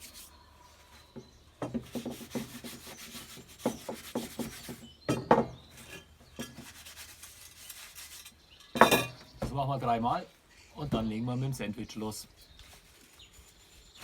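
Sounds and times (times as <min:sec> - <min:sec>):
cast iron knocking and scraping on wood: 0:01.2 - 0:06.8, 0:08.6 - 0:09.6.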